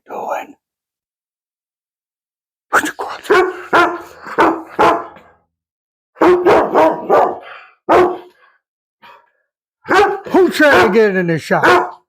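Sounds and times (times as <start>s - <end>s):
dog barking: 3.2s - 5.3s, 6.2s - 8.4s, 9.8s - 12.0s.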